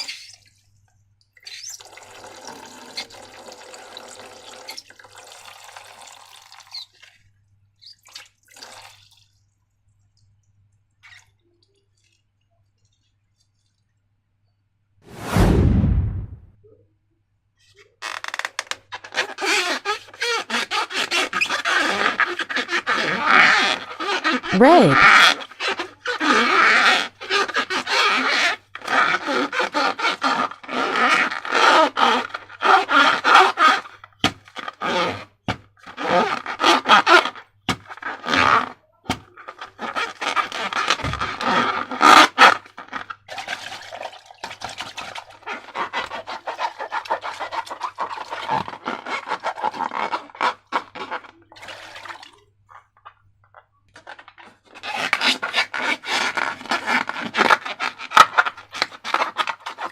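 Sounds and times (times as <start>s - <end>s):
slime squishing and scraping: 19.1s - 43.8s, 44.5s - 52.2s, 54.0s - 59.9s.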